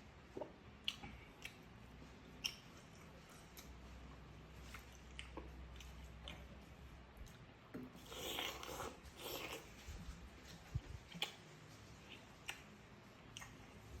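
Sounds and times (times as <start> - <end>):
person chewing: 0.3 - 4.0, 4.6 - 9.9, 10.7 - 14.0.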